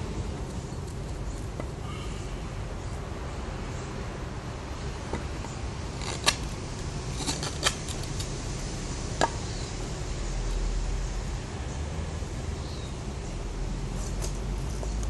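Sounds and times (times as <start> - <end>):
steady low rumble: 0.0 - 15.0
knife cracking into wood: 6.0 - 6.6, 7.2 - 8.3.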